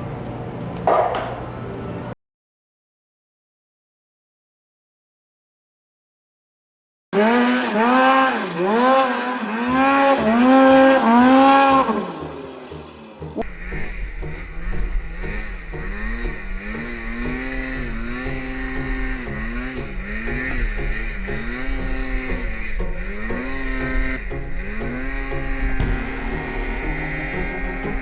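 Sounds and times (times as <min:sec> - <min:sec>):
snowmobile engine revving: 0:07.2 - 0:28.0.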